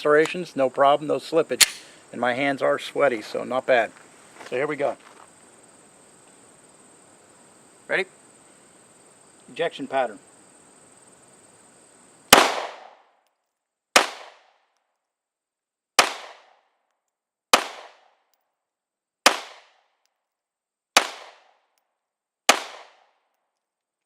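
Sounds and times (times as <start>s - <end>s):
pistol shots: 12.3s - 13.1s, 14.0s - 14.5s, 16.0s - 16.6s, 17.5s - 18.1s, 19.2s - 19.8s, 21.0s - 21.5s, 22.5s - 23.1s.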